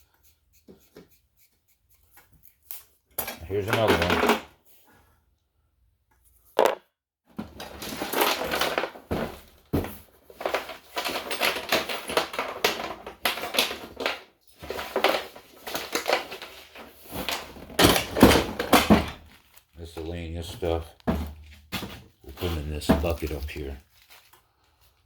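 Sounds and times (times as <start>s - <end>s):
metal parts clattering and rattling: 3.2s - 4.4s, 7.5s - 9.5s, 10.2s - 19.5s.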